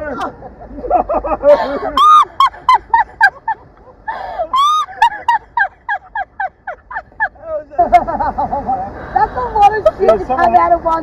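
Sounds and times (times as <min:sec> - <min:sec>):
woman shrieking and laughing: 0:01.4 - 0:07.3.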